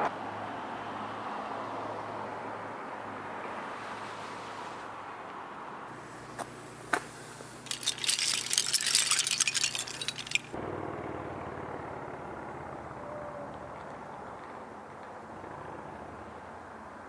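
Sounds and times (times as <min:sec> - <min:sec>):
small hard objects clinking: 0:05.9 - 0:10.6.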